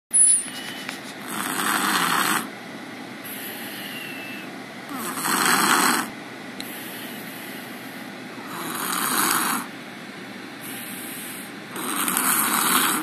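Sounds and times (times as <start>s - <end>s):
loud snores: 1.2s - 2.5s, 4.9s - 6.1s, 8.4s - 9.7s, 11.7s - 13.0s.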